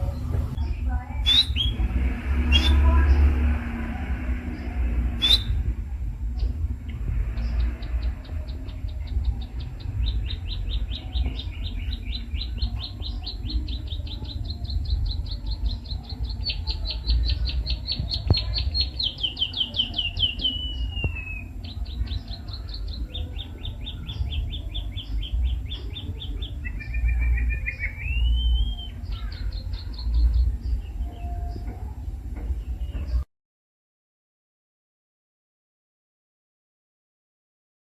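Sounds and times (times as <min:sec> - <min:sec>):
bird singing sharp ticking notes: 0:00.0 - 0:03.5, 0:04.6 - 0:05.8, 0:06.4 - 0:33.2
steady low rumble: 0:00.0 - 0:33.3
short rising whistle: 0:05.2 - 0:05.6.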